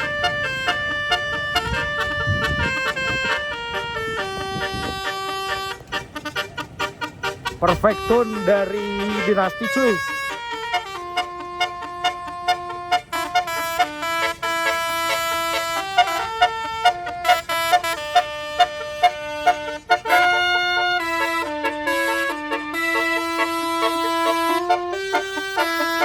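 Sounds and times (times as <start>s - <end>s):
bus musical air horn: 0.0s - 26.0s.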